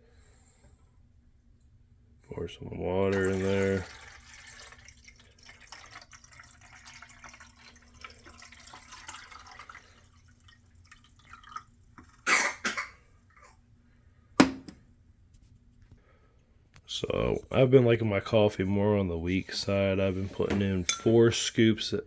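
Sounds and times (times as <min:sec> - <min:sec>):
water pouring into reservoir: 0:03.0 - 0:12.2
loud knocks: 0:14.4 - 0:14.8.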